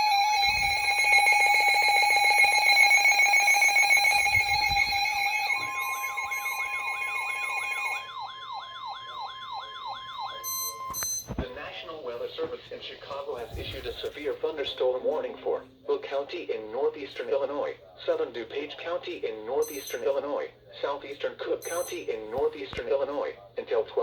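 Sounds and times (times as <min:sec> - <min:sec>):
rising siren-like warble: 0:00.0 - 0:11.0
steady high single tone: 0:00.0 - 0:11.4
two-tone alert tone: 0:00.0 - 0:11.4.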